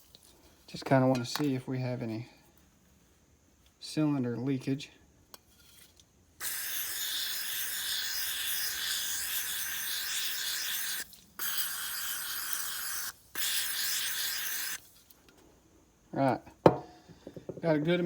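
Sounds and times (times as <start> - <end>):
aerosol spray hissing: 6.4 - 14.8.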